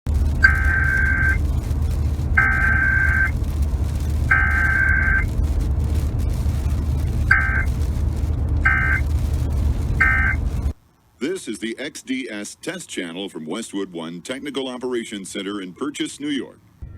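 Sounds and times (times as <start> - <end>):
buzzy warbling data bursts: 0.1 - 10.8
steady low hum: 0.1 - 10.8.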